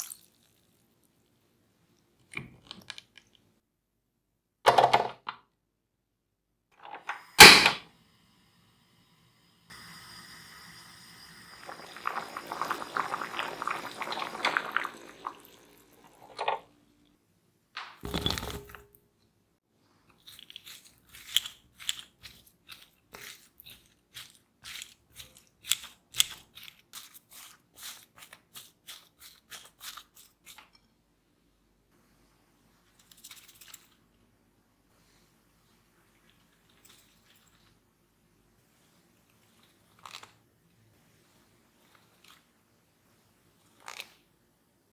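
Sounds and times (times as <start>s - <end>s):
food scraping and squishing: 11.7s - 16.7s, 20.1s - 30.8s.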